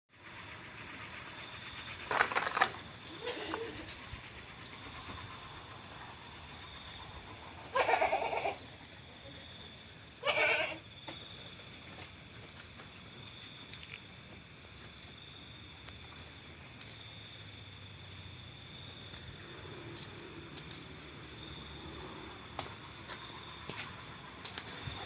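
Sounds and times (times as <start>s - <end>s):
animal bleat-like cries: 3.1s - 4.0s, 7.7s - 8.7s, 10.2s - 10.8s.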